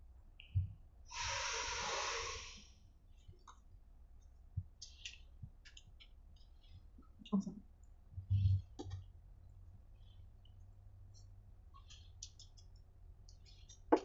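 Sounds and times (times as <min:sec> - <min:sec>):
breathy rush of air: 0:01.1 - 0:02.7
wet chewing clicks: 0:04.8 - 0:08.0, 0:10.0 - 0:14.0.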